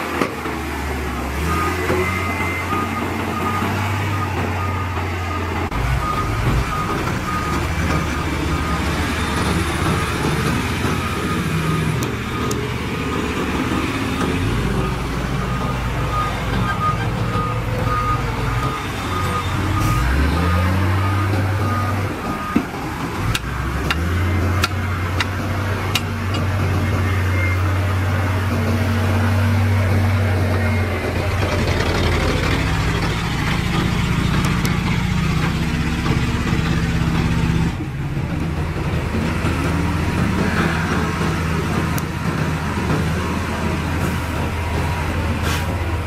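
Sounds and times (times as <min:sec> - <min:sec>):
heavy diesel engines running: 0:00.0 - 0:46.0
sharp clicks or knocks: 0:22.6 - 0:26.6.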